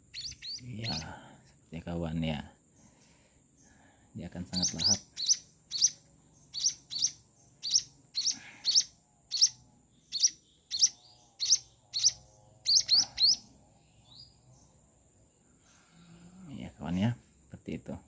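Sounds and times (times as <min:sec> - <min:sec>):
chick begging chirps: 0:00.0 - 0:01.1, 0:04.5 - 0:13.5.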